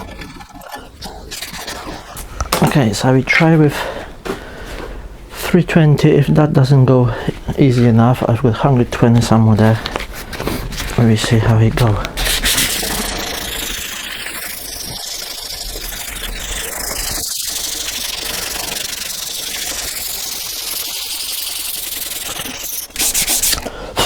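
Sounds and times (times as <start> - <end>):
sandpaper scouring metal: 9.6 - 23.7.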